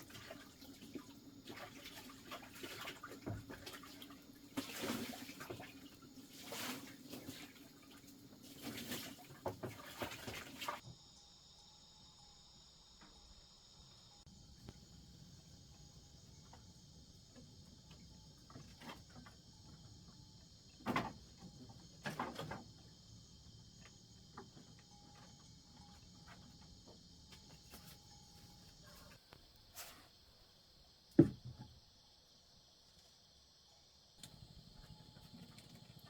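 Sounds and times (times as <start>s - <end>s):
insects chirring: 0.0s - 36.0s.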